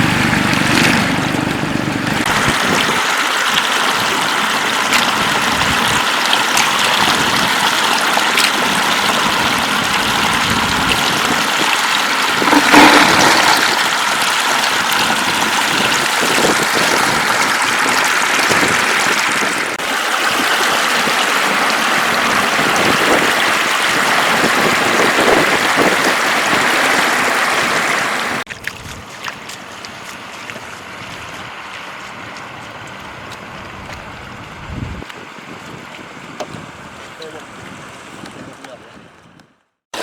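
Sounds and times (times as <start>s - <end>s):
floodwater running: 0.0s - 38.8s.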